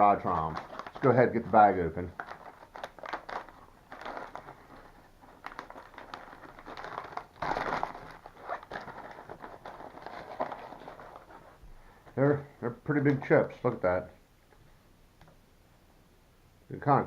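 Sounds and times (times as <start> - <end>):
snack bag crinkling: 0.0 - 11.6.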